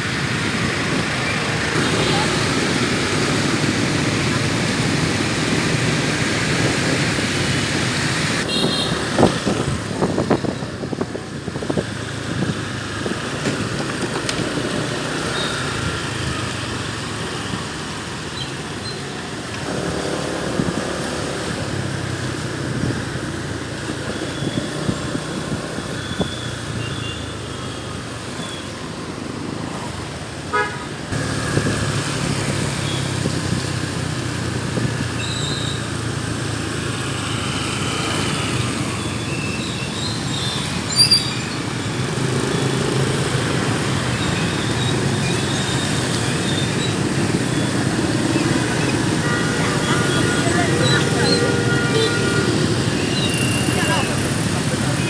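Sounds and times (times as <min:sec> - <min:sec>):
traffic engines running: 0:00.0 - 0:55.0
car horn toots: 0:08.4 - 0:09.0, 0:30.5 - 0:30.9, 0:48.5 - 0:54.1.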